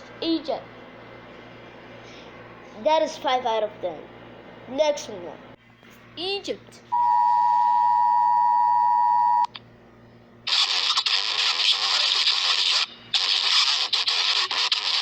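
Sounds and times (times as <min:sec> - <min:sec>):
two-tone alarm signal: 0:06.9 - 0:09.5
loud harsh static: 0:10.4 - 0:15.0.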